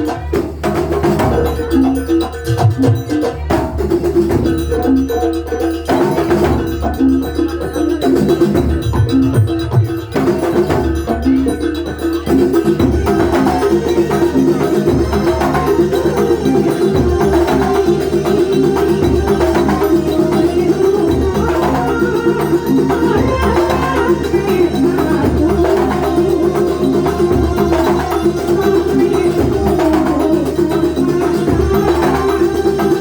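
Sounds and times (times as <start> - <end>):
drum strokes: 0.0 - 33.0
ringing pitched percussion: 0.0 - 33.0.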